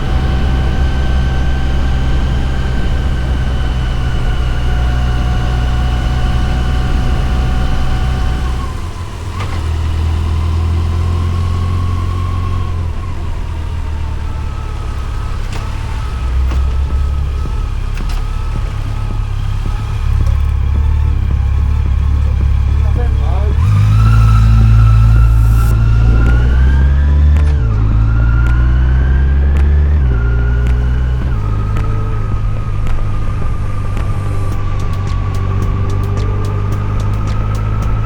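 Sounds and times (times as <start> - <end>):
motorcycle engine low drone: 0.0 - 38.0
higher tone sliding down: 10.0 - 38.0.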